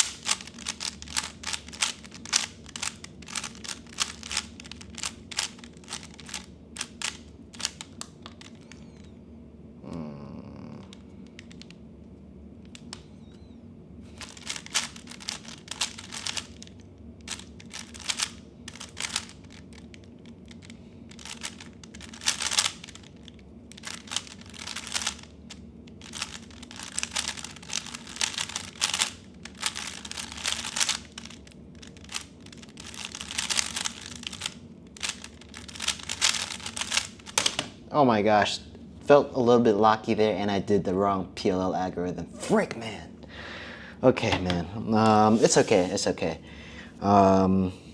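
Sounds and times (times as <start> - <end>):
puzzle cube plastic clicking: 0.0 - 9.1, 10.8 - 11.8, 12.6 - 13.4, 14.2 - 37.8.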